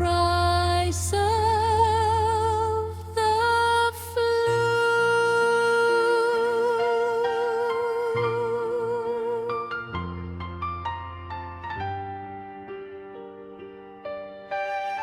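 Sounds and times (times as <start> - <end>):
wordless female vocal with vibrato: 0.0 - 9.7.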